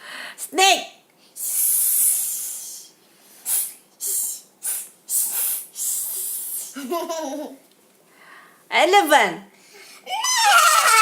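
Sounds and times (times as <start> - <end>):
children hissing like a snake: 1.4 - 6.9.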